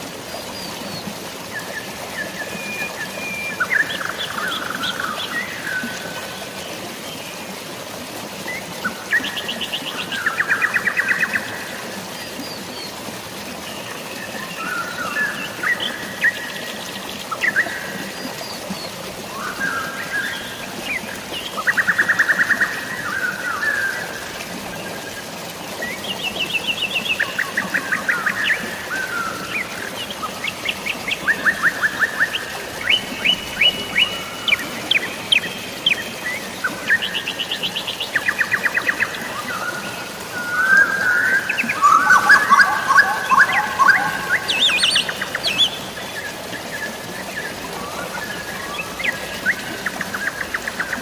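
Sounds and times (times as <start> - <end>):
falling water hiss: 0.0 - 51.0
songbirds chirping and trilling: 26.0 - 51.0.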